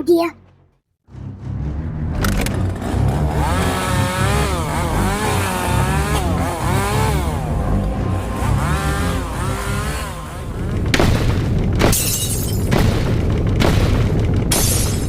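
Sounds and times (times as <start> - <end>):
chainsaw revving: 2.6 - 10.9.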